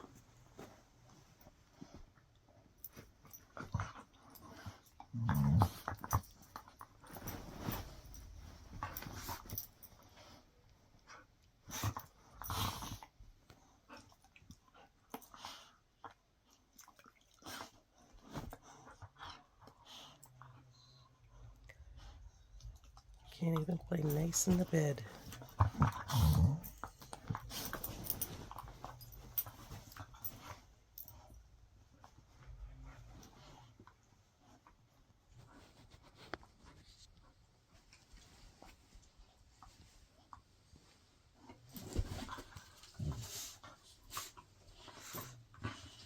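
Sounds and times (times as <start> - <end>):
quiet dog sounds: 0.0 - 46.0
dogs scuffling on a bed: 6.3 - 10.4, 24.0 - 31.2, 35.3 - 46.0.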